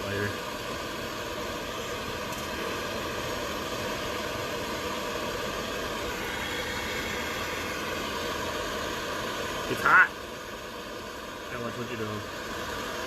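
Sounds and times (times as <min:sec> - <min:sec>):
heating tool hissing: 0:00.0 - 0:13.0.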